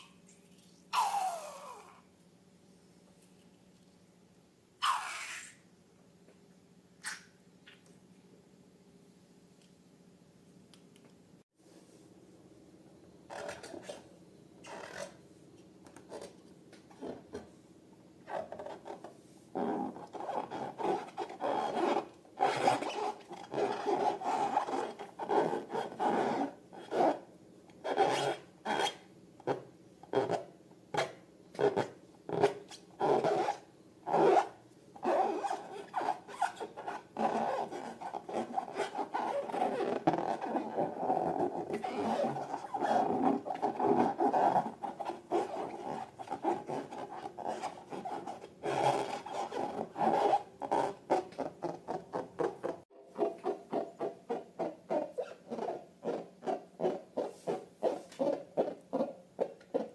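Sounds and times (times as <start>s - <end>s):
hands rubbing material: 33.0s - 58.8s.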